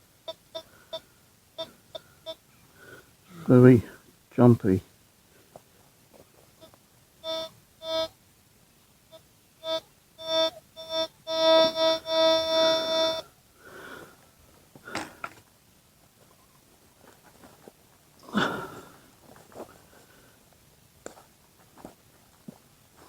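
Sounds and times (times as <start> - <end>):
metal detector beeping: 1.6 - 2.4, 7.2 - 8.1, 9.6 - 13.3
scuff: 21.1 - 23.0.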